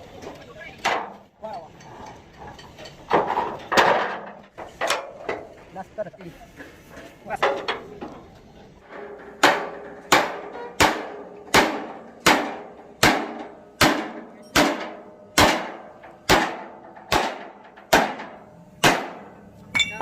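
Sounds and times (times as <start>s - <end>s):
hammer striking metal: 8.9s - 20.0s.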